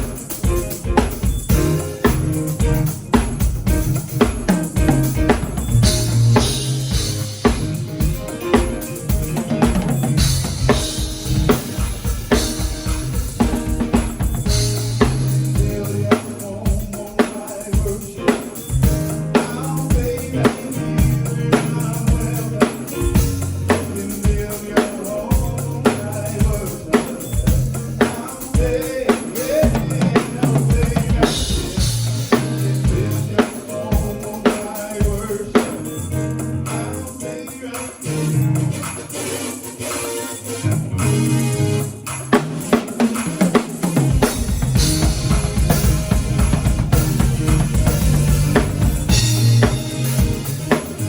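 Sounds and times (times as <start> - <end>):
drum kit beat: 0.0 - 51.0
bass line: 1.3 - 16.2, 18.7 - 24.1, 27.4 - 28.2, 29.6 - 33.4, 38.1 - 38.9, 40.6 - 42.2, 44.0 - 51.0.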